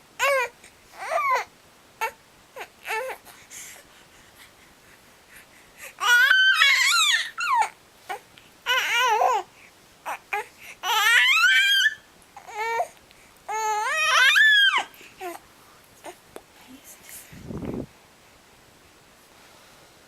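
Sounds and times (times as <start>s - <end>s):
high-pitched wavering crying calls: 6.0s - 7.8s.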